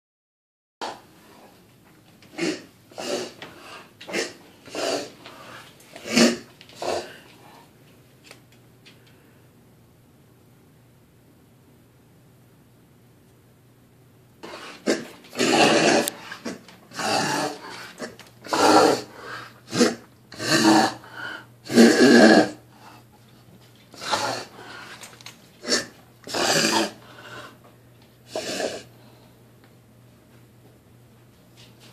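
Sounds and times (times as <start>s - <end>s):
dog coughing: 2.3s - 5.2s, 6.0s - 7.2s, 14.4s - 21.0s, 25.6s - 27.0s.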